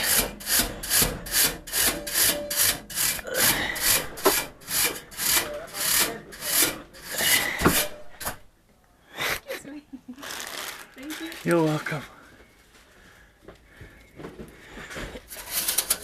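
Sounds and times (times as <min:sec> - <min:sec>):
stiff brush scrubbing metal fins: 0:00.0 - 0:08.4.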